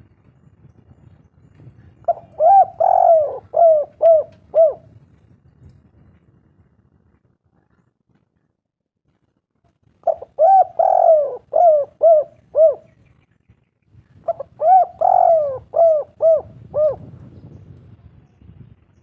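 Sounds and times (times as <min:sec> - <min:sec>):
dove cooing: 0:02.0 - 0:04.9, 0:10.0 - 0:13.0, 0:14.2 - 0:17.2.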